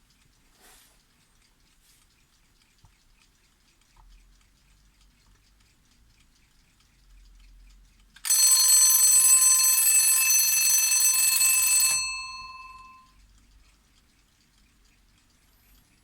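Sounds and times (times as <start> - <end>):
alarm clock bell ringing: 8.2 - 13.2.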